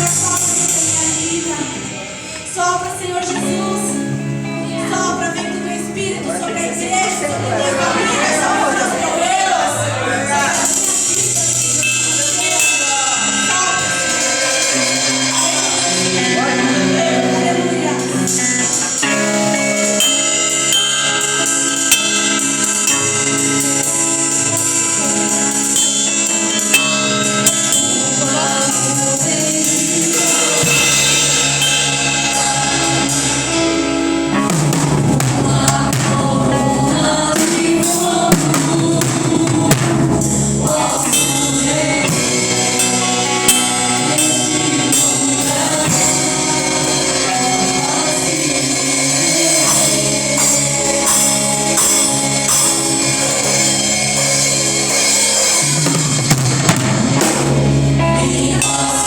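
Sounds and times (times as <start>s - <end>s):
people singing: 0.0s - 59.0s
sustained chords: 0.0s - 59.0s
percussion hits: 10.4s - 17.0s, 18.0s - 58.0s.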